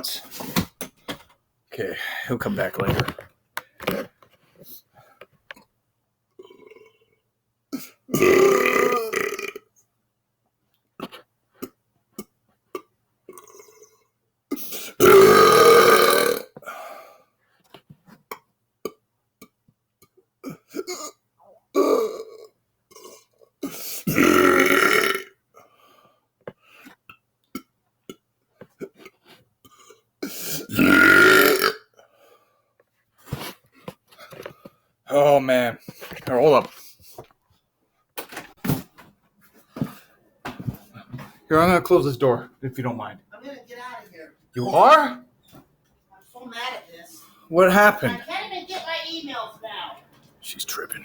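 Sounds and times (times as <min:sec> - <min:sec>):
man belching loudly: 0:08.1 - 0:09.7, 0:15.0 - 0:16.5, 0:20.4 - 0:23.3, 0:24.1 - 0:25.4, 0:30.6 - 0:31.9.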